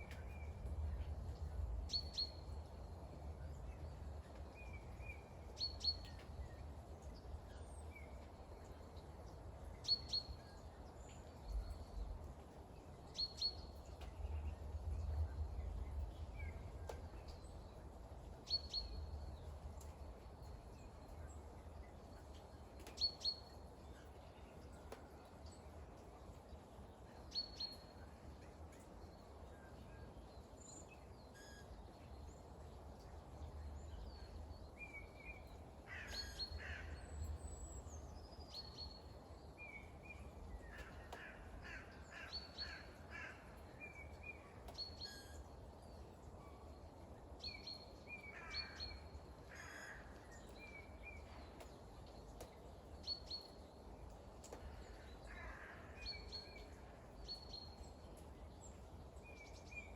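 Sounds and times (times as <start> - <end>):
light rain hiss: 0.0 - 59.9
crow-like caw: 49.5 - 50.1, 55.3 - 56.0.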